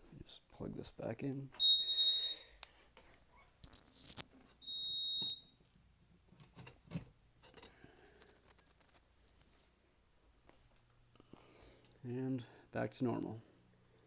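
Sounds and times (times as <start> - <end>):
high steady alarm panel beep: 1.6 - 2.5, 4.6 - 5.6.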